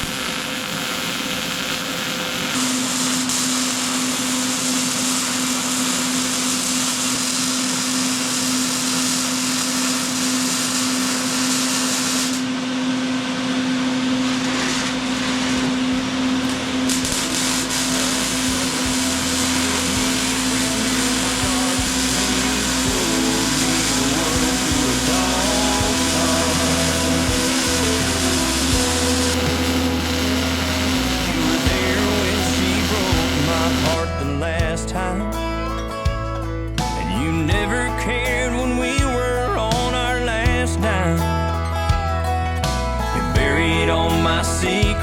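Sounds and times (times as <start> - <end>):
small electric motor humming: 0.0 - 12.5, 14.4 - 34.2
low bass line: 15.9 - 45.0.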